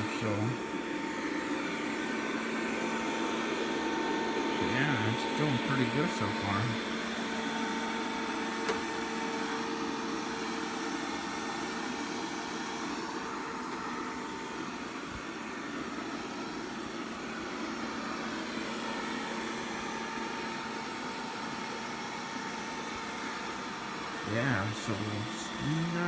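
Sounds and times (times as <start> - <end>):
robot vacuum whirring: 4.6 - 10.4.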